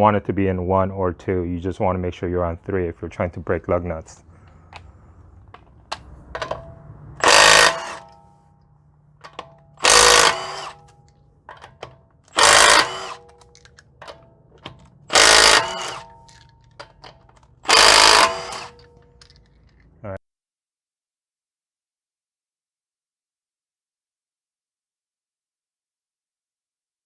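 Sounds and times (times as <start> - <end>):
impact wrench hammering: 5.6 - 8.3, 9.2 - 19.1.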